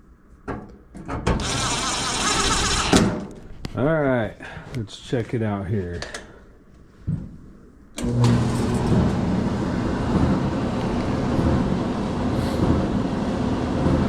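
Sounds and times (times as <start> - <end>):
dryer motor and drum rumbling: 1.3 - 3.3, 8.0 - 14.0.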